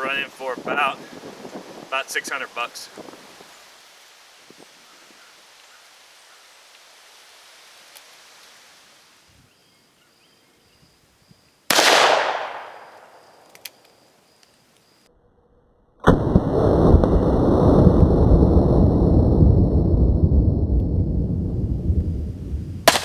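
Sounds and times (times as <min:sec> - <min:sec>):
gunshot with echo: 0:11.7 - 0:13.2.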